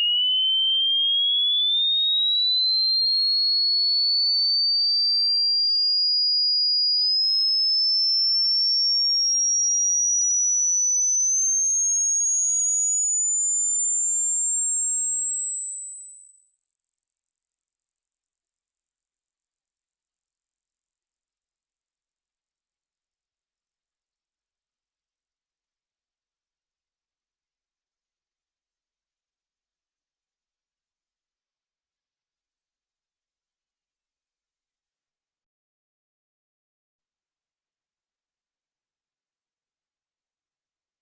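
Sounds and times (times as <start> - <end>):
high-pitched test tone sweep: 27.7 - 35.0.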